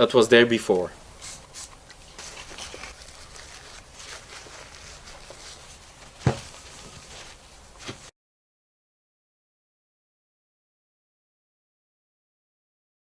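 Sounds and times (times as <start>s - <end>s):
cloth rubbing on cable: 1.2s - 8.1s.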